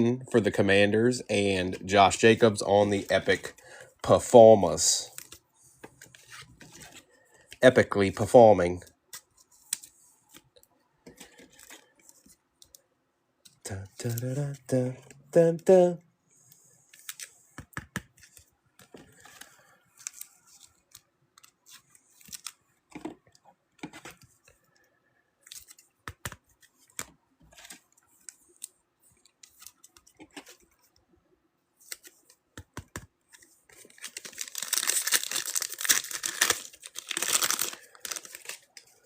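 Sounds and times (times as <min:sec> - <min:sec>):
cards and packaging clicking: 0:25.4 - 0:30.8, 0:31.8 - 0:39.0
foil wrapper ripping: 0:34.0 - 0:38.6.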